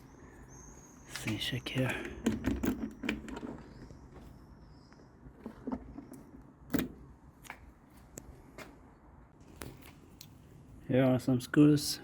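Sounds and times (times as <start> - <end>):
handling clicks and knocks: 1.1 - 4.4.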